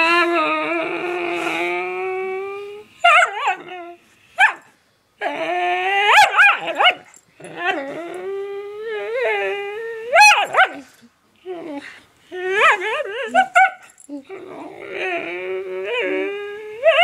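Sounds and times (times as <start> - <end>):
dog howling and whining: 0.0 - 4.5, 5.2 - 17.0
dog yipping: 3.1 - 3.6, 6.1 - 7.1.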